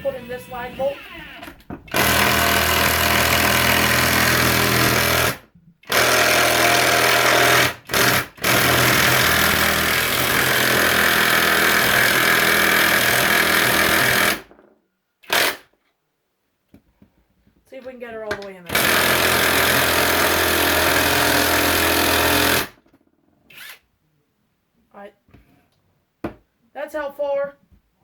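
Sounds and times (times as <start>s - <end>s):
impact wrench hammering: 1.8s - 15.7s, 18.4s - 22.9s.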